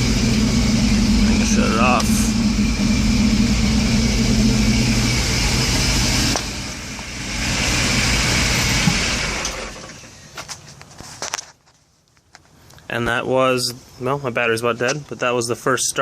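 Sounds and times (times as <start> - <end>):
belt-driven air compressor running: 0.0 - 10.2
car engine idling: 0.0 - 10.4.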